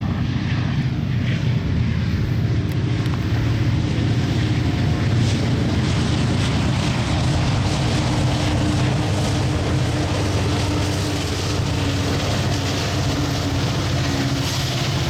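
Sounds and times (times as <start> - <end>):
diesel locomotive engine rumbling: 0.0 - 15.0.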